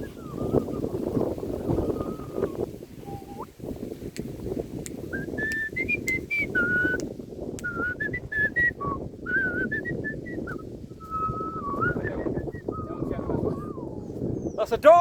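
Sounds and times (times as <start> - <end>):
wind rumble on microphone: 0.0 - 15.0
person whistling a tune: 1.8 - 3.4, 5.1 - 7.0, 7.6 - 13.9.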